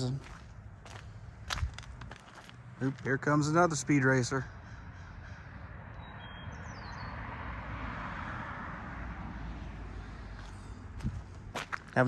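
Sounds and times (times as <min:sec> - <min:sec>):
car passing by: 0:07.1 - 0:11.3.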